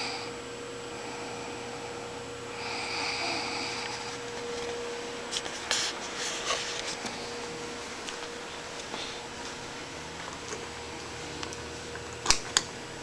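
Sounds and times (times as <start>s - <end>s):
woman snoring: 0.0s - 4.4s
faint steady hum: 0.0s - 13.0s.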